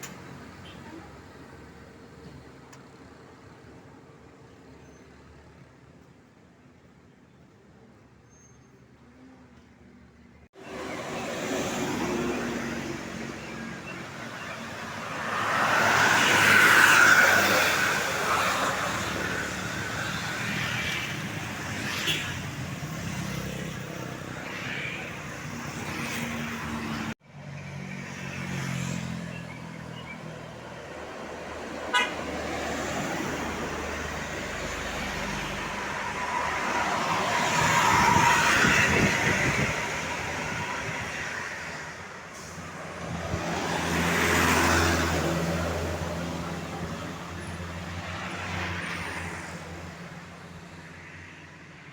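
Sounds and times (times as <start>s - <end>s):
large vehicles passing: 10.5s - 51.1s
vehicle horns tooting: 31.9s - 32.3s.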